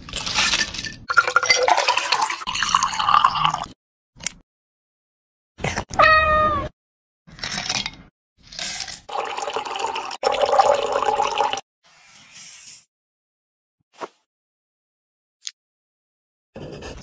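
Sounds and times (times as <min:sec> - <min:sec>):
cat meowing: 0:05.9 - 0:06.7.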